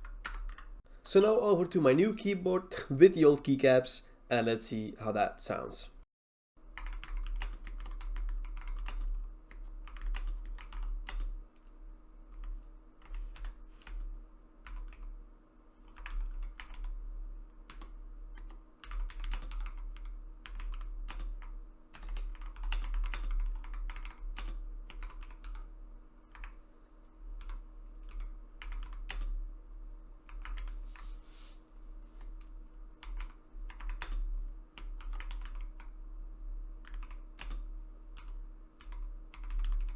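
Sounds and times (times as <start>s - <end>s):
mechanical keyboard typing: 0.0s - 0.7s, 6.8s - 11.7s, 12.3s - 15.1s, 15.9s - 16.9s, 17.7s - 25.6s, 27.4s - 29.3s, 30.3s - 30.8s, 33.0s - 34.2s, 34.8s - 35.9s, 36.8s - 37.6s, 38.2s - 39.9s.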